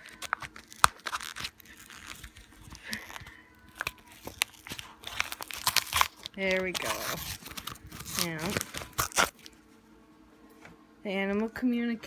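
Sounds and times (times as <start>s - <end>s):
packaging being torn by hand: 0.0s - 9.6s
crinkling rustles: 0.0s - 9.9s.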